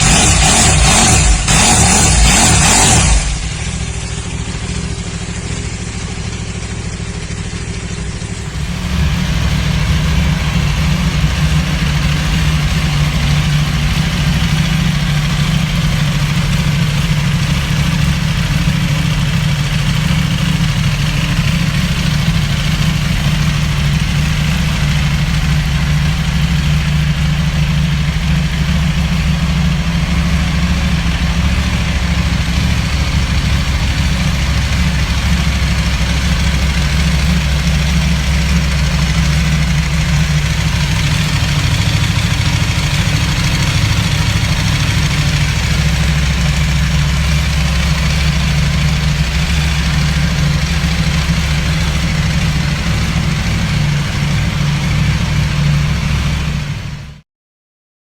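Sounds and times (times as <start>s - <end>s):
motorcycle engine idling: 0.0s - 57.2s.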